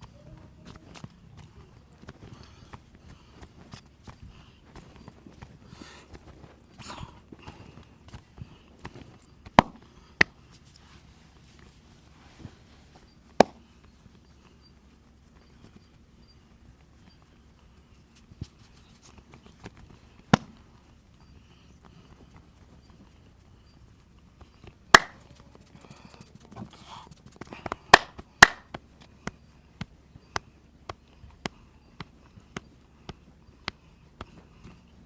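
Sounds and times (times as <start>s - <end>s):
hand strikes on body: 9.5s - 10.3s, 13.4s - 13.6s, 20.3s - 20.6s, 24.9s - 25.2s, 27.6s - 29.9s.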